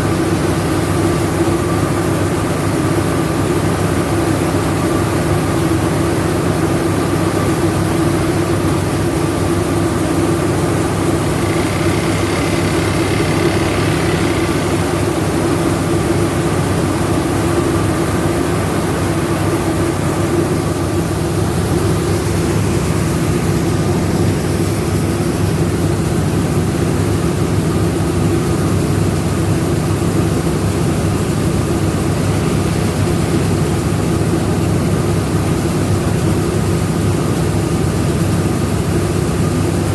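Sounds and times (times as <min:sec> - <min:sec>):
milling machine droning: 0:07.7 - 0:27.8, 0:30.6 - 0:35.2.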